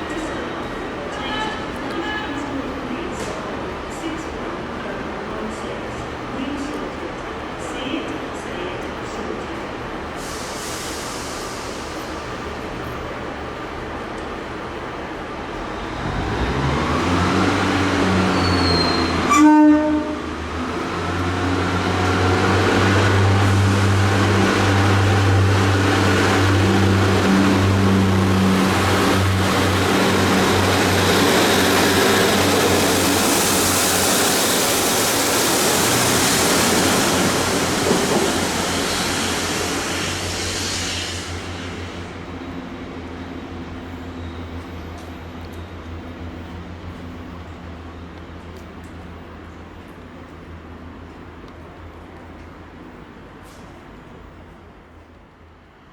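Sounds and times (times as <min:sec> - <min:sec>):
train horn blast: 0:18.7 - 0:20.3.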